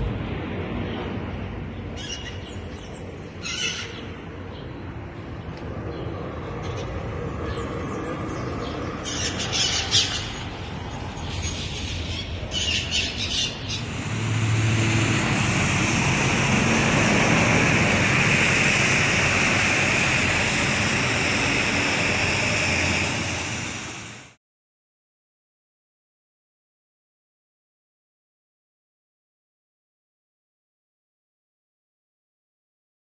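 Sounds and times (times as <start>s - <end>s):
storm wind: 0.0s - 2.0s, 13.6s - 24.3s
heavy rain: 13.8s - 24.1s.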